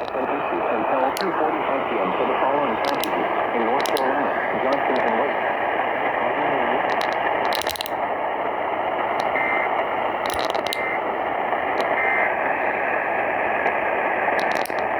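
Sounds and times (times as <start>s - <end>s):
radio crackles: 0.0s - 14.9s
radio static hiss: 0.0s - 14.9s.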